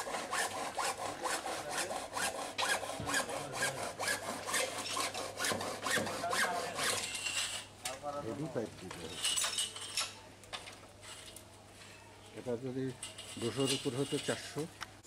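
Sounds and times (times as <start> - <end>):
hand saw scraping strokes: 0.0 - 7.8, 13.0 - 14.6.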